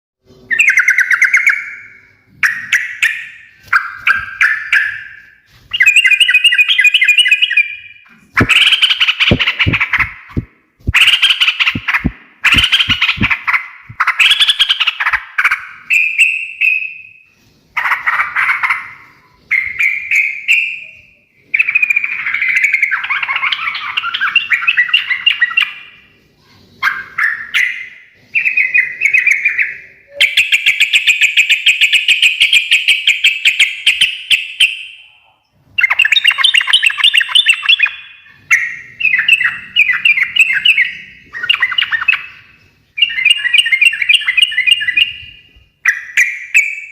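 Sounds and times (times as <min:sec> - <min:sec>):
bird singing chattering phrases: 0:05.7 - 0:15.4.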